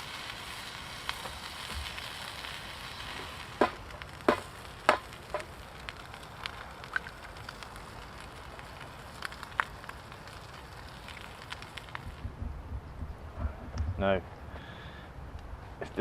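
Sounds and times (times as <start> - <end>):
egg sizzling in oil: 0.0 - 12.2.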